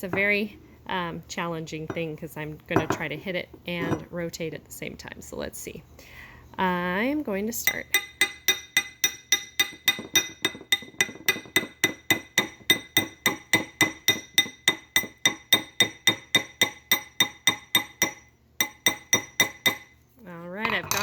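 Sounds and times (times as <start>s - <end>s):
hammer striking metal ring: 7.7s - 19.9s.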